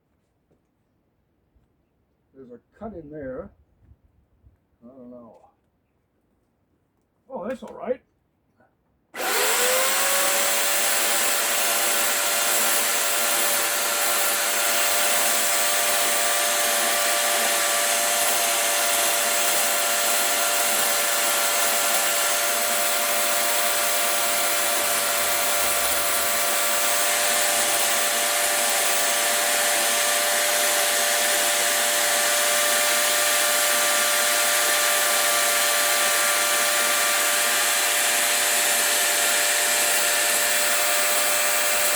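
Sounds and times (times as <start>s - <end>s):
rotary tool grinding wood: 9.2s - 41.9s.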